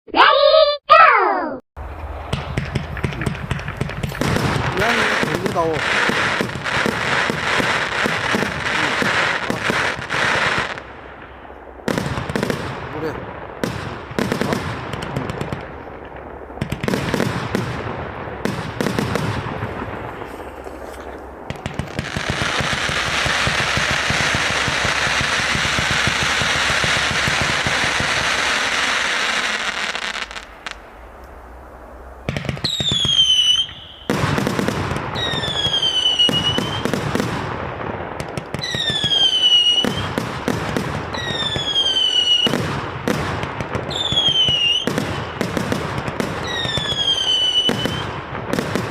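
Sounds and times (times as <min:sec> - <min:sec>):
firework launch bangs: 0:01.8 - 0:30.8, 0:32.2 - 0:48.9
firework crackle: 0:01.8 - 0:48.9
firework whistles falling in pitch: 0:32.3 - 0:34.2, 0:35.2 - 0:37.0, 0:38.6 - 0:40.1, 0:41.2 - 0:42.6, 0:43.9 - 0:45.0, 0:46.4 - 0:48.1.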